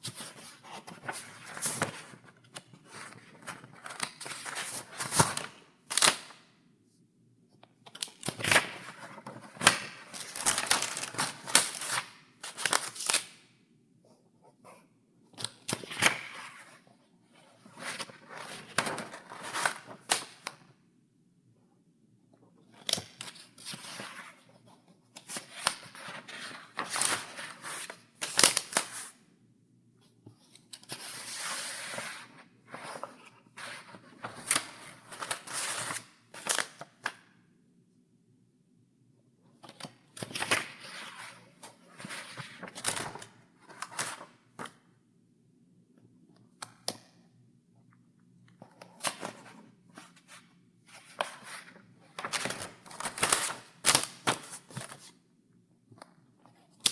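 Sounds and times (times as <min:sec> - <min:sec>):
paper pages turning: 0:00.1 - 0:06.3, 0:07.9 - 0:13.3, 0:25.2 - 0:29.0, 0:30.8 - 0:37.1, 0:42.0 - 0:44.2, 0:48.7 - 0:55.1.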